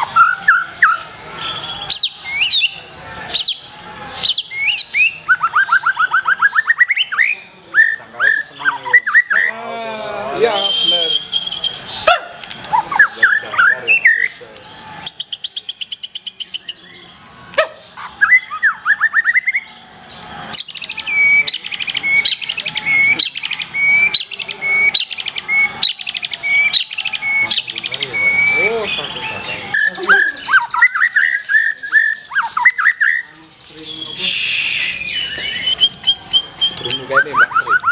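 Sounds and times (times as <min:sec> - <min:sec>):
songbird singing: 0:00.0 - 0:37.9
sharp bird ticks: 0:35.3 - 0:37.9.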